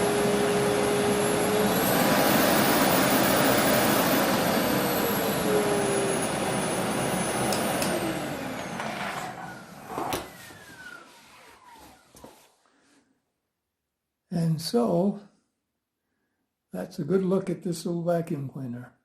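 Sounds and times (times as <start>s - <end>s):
vacuum cleaner motor whine: 0.0s - 12.5s.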